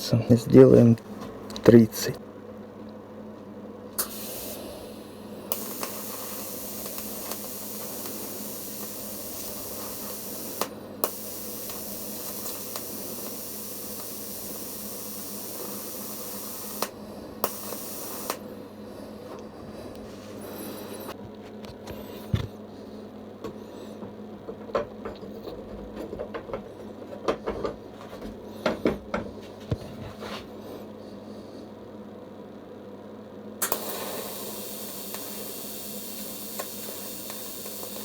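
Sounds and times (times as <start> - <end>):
welder sharp click: 4.0 - 4.6, 5.5 - 18.5, 33.6 - 38.0
welding arc hissing: 4.0 - 19.3, 33.6 - 38.0.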